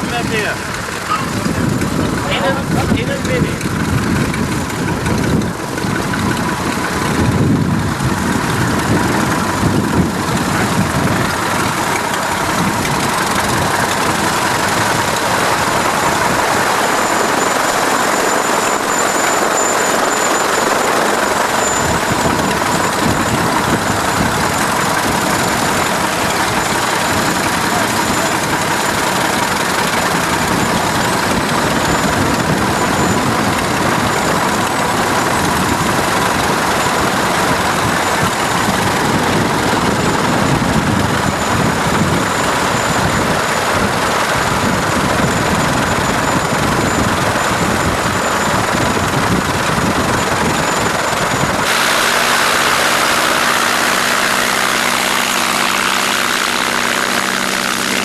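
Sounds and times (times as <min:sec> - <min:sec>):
aircraft engine and propeller: 0:00.0 - 0:58.0
steady pitched engine note: 0:00.0 - 0:58.0.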